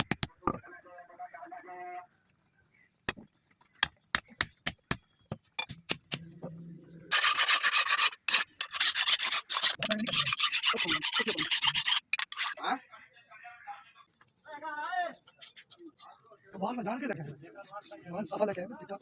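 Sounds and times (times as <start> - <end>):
hand file scraping metal: 7.1 - 12.6.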